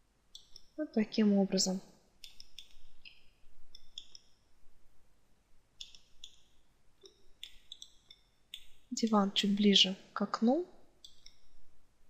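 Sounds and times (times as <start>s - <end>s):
computer mouse buttons clicking: 0.3s - 0.7s, 2.2s - 4.3s, 5.8s - 6.4s, 7.0s - 8.7s, 11.0s - 11.5s.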